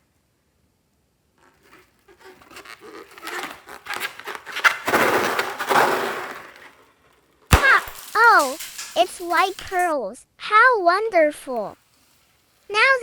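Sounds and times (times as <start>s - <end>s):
hands rubbing bead-filled balloon: 1.4s - 5.5s.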